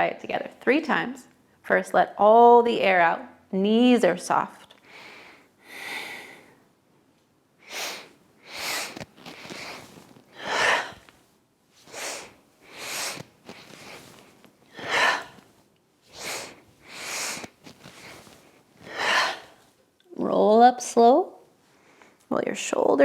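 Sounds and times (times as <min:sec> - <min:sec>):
person inhaling through nose: 0:07.6 - 0:11.2, 0:11.8 - 0:15.5, 0:16.1 - 0:19.6.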